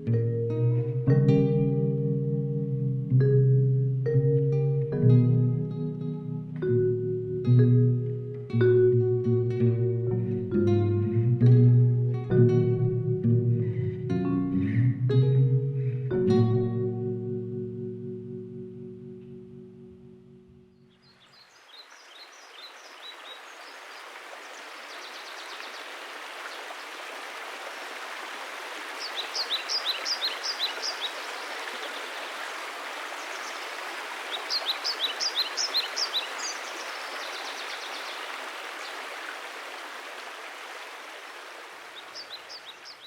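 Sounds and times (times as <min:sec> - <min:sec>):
small bird singing: 0:20.7 - 0:23.8, 0:29.0 - 0:32.2, 0:34.3 - 0:39.0, 0:42.0 - 0:43.0
stream water flowing: 0:21.0 - 0:43.0.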